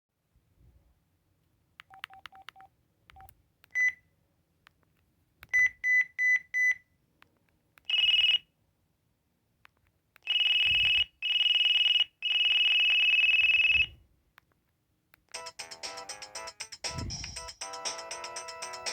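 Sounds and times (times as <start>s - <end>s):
cell phone electronic beeps: 1.8s - 4.0s, 5.5s - 6.8s, 7.8s - 8.4s, 10.2s - 14.0s.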